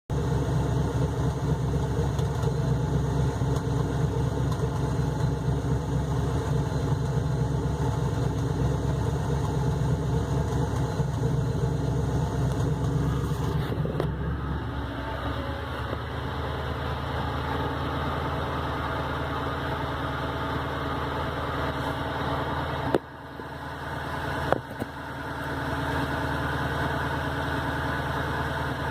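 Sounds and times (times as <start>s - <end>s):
car engine idling roughly: 0.1s - 28.9s.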